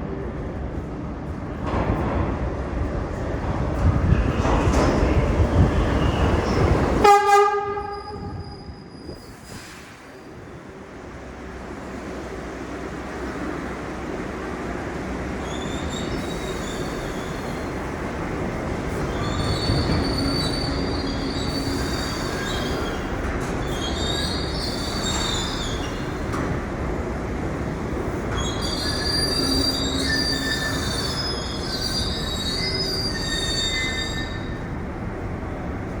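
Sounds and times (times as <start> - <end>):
train wheels rumbling on rail: 0.0 - 36.0
high-pitched wheel squeal: 19.1 - 26.1, 28.3 - 34.7.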